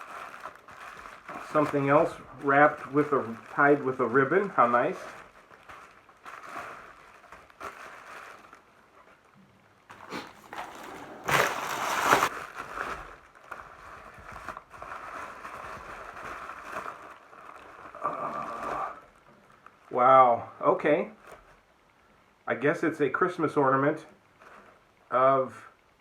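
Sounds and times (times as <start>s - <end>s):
wrapping paper rustling and tearing: 0.0s - 9.3s, 9.9s - 19.9s, 21.1s - 21.7s, 24.2s - 25.0s.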